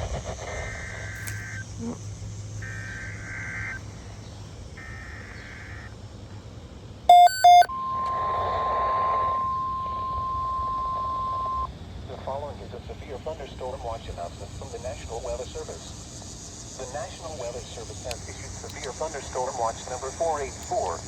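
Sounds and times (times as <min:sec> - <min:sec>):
radio hum and hiss: 0:00.0 - 0:05.9, 0:07.1 - 0:21.0
short loud beeps: 0:07.1 - 0:11.7
steady warning alarm tone: 0:07.1 - 0:11.7
warbling digital data bursts: 0:07.1 - 0:11.7.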